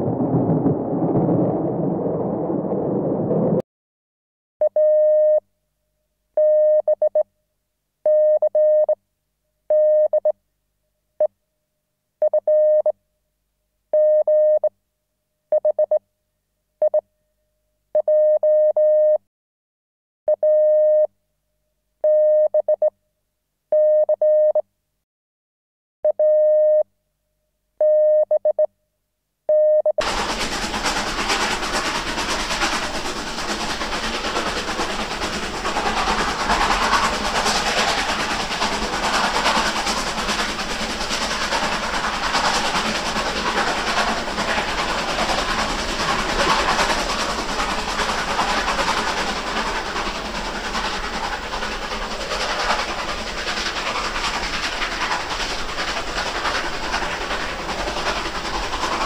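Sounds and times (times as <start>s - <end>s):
loud rushing rumble: 0.0s - 3.6s, 30.0s - 59.0s
electronic beep tone pulses: 4.7s - 5.4s, 6.4s - 7.2s, 9.7s - 10.3s, 12.3s - 12.9s, 14.0s - 14.7s, 22.0s - 22.9s, 26.1s - 26.8s, 27.8s - 28.6s.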